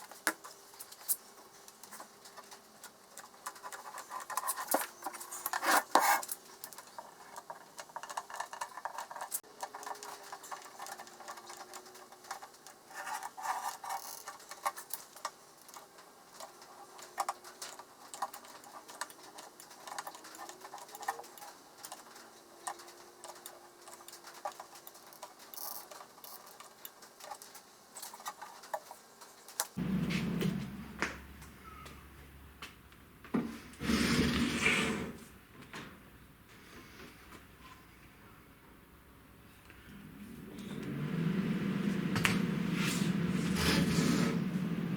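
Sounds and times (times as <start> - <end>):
small parts clicking and tapping: 0.0 - 29.8
low hum: 29.8 - 32.6, 39.7 - 44.9.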